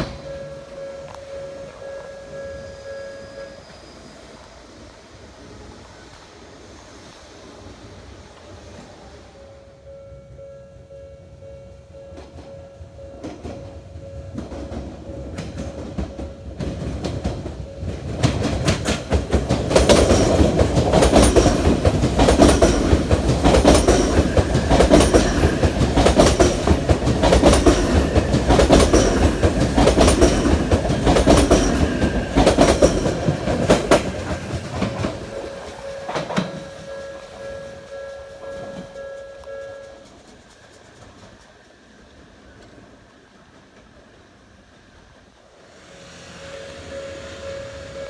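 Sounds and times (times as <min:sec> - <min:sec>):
train wheels striking rail joints: 0:00.0 - 0:03.8, 0:12.1 - 0:42.8
train rumble: 0:00.0 - 0:48.0.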